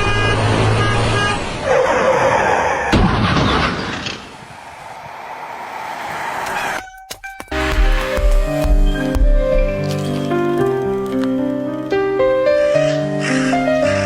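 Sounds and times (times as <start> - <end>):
horn-like tone: 0.0 - 1.5
rushing noise: 4.2 - 6.8.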